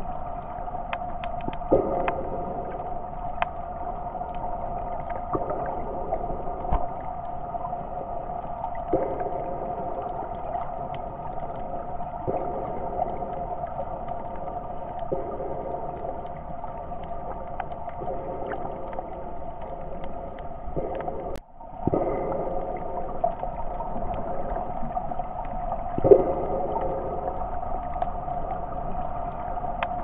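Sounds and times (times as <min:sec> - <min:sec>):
muffled underwater hum: 0:00.0 - 0:30.0
water noise swells: 0:00.0 - 0:30.0.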